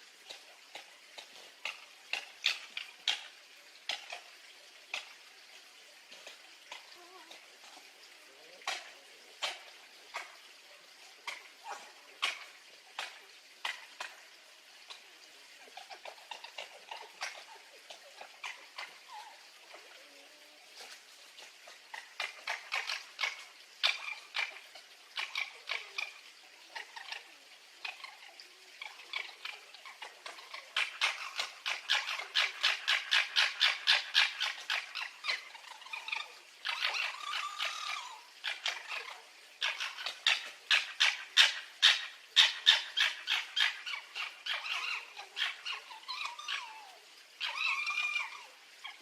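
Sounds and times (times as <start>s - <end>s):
fox yelping and whining: 45.8s - 48.4s.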